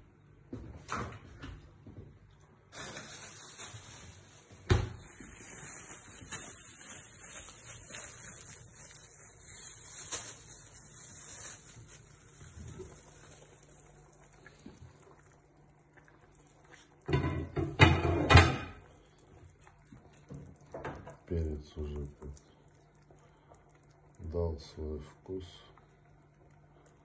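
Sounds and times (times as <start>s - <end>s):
kitchen knocks and clatters: 4.6s - 5.3s, 17.0s - 18.9s, 20.2s - 21.3s.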